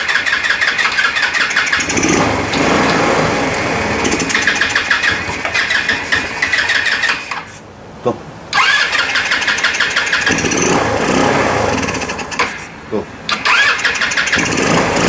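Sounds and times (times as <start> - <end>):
electric starter cranking engine: 0.0 - 7.6, 8.5 - 12.7, 13.3 - 15.0
starter click: 0.2 - 3.1.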